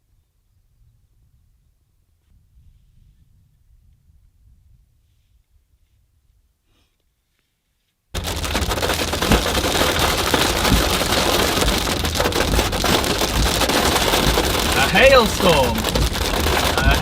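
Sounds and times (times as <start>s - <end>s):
hail hitting a vehicle: 8.2s - 17.0s.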